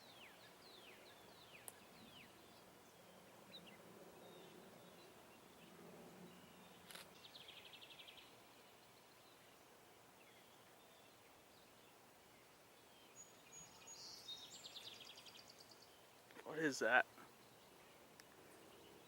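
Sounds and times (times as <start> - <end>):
single click: 6.8 - 7.1
faint bird chirps: 10.2 - 19.0.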